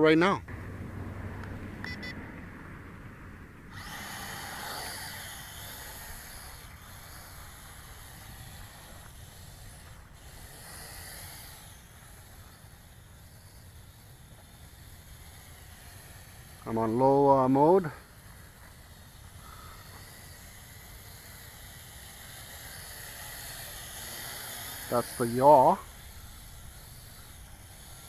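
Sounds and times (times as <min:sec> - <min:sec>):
short beep: 0:01.8 - 0:02.2
toy drone propellers whirring: 0:03.7 - 0:28.0.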